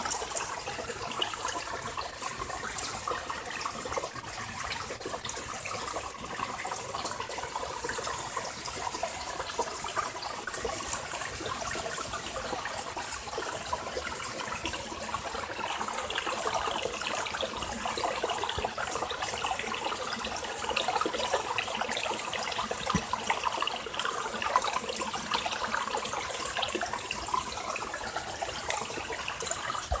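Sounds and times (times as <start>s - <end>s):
stream water over rocks: 0.0s - 30.0s.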